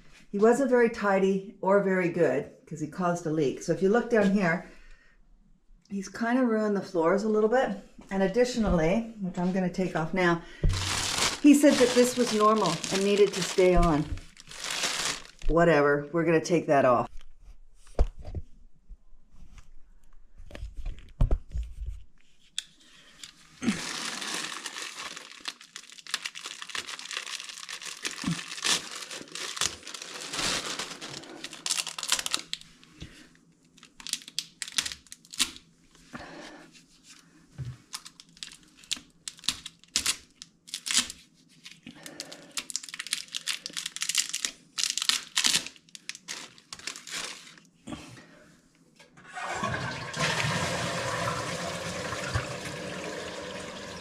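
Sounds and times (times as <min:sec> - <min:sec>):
covering tearing and rustling: 0:10.6 - 0:15.6, 0:23.1 - 0:33.0, 0:33.6 - 0:35.7, 0:37.8 - 0:47.7.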